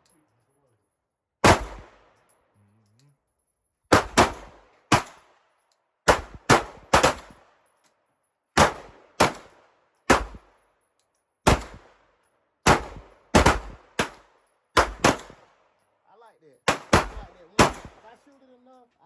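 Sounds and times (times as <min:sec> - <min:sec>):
pistol shots with short echo: 0:01.4 - 0:02.1, 0:03.9 - 0:05.2, 0:06.1 - 0:07.5, 0:08.6 - 0:10.5, 0:11.4 - 0:12.0, 0:12.6 - 0:15.5, 0:16.7 - 0:18.2.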